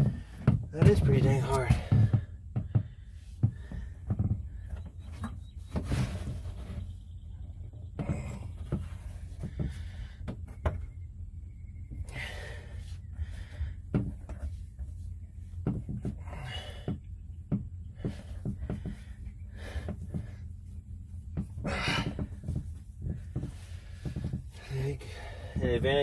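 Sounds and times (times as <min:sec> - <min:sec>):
pipe knocking and thudding: 0:00.0 - 0:04.8, 0:15.6 - 0:16.3, 0:21.3 - 0:24.4
person breathing heavily: 0:12.0 - 0:13.9, 0:16.2 - 0:17.0, 0:17.9 - 0:20.6, 0:21.6 - 0:25.8.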